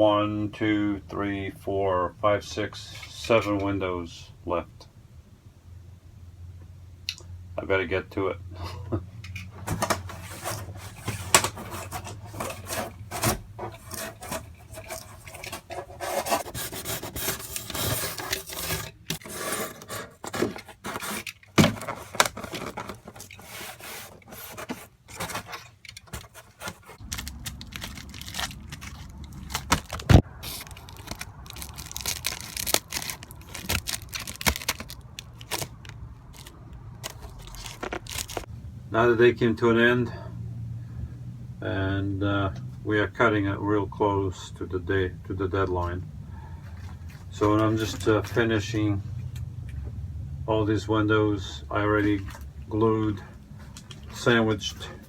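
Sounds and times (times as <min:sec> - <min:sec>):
scratchy rubbing on foam board: 0:09.7 - 0:27.1.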